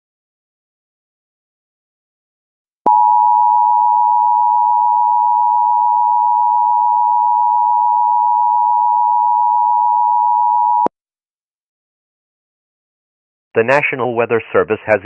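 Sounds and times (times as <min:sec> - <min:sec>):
two-tone electronic alert tone: 0:02.9 - 0:10.9.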